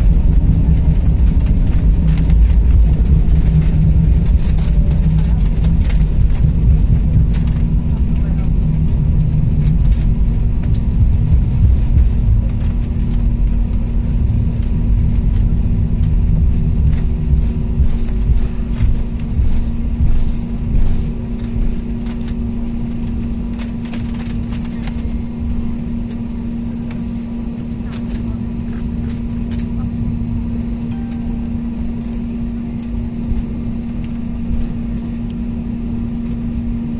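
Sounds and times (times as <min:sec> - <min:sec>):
airliner rolling on runway: 0:00.0 - 0:36.9.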